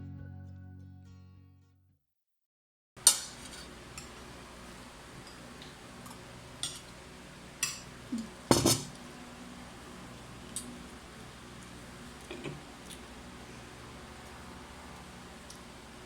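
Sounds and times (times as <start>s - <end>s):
cutlery clinking on a plate: 8.5s - 9.0s.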